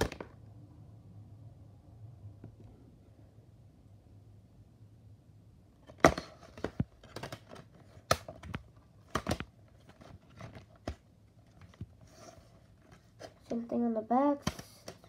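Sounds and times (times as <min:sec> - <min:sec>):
plastic case clicks and snaps: 0:05.9 - 0:11.0.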